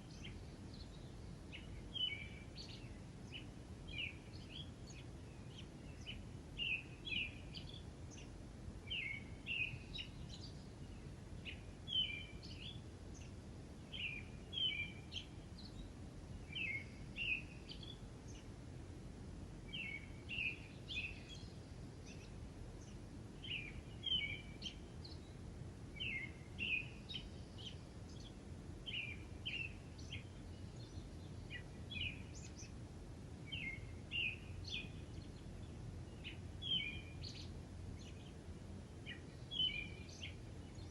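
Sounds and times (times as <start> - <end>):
songbirds chirping: 0.0 - 40.9.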